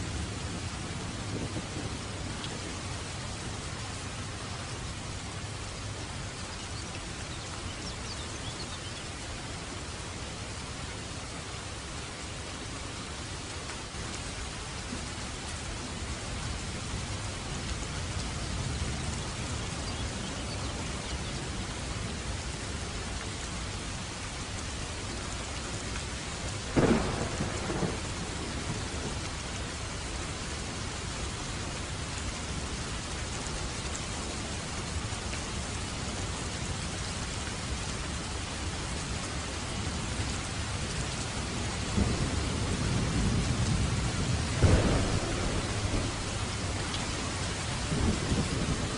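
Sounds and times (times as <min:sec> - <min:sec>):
low thunder rumbling: 0:00.0 - 0:03.8, 0:26.7 - 0:29.8, 0:41.9 - 0:48.9
steady rain falling: 0:00.0 - 0:48.9
thunder clap: 0:26.8 - 0:29.2, 0:44.6 - 0:46.7.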